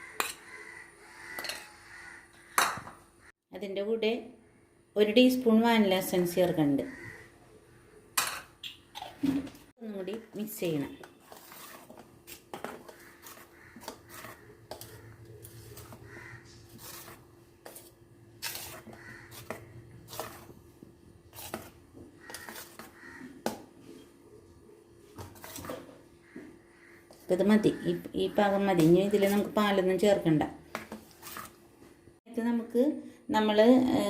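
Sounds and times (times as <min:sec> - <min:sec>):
spoon scraping bowl: 0:00.0 - 0:01.8, 0:09.0 - 0:24.2, 0:25.1 - 0:26.1, 0:27.1 - 0:29.8, 0:30.7 - 0:31.6
batter stirring: 0:10.0 - 0:24.4, 0:25.0 - 0:27.4, 0:30.7 - 0:31.6.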